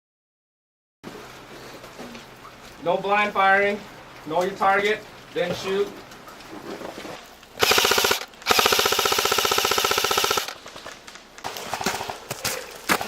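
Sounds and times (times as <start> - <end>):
airsoft gun firing bursts: 7.6 - 10.6.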